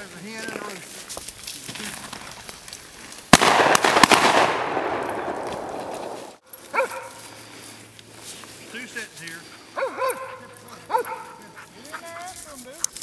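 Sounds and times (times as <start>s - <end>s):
shotgun shots: 3.3s - 6.4s.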